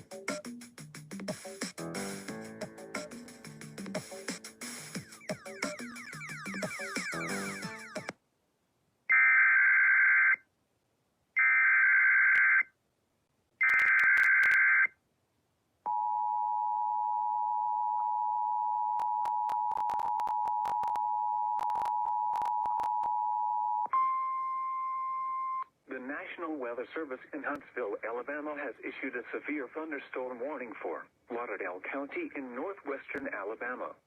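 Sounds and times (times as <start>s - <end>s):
clicks and crackles: 19.0s - 21.0s, 21.6s - 23.1s.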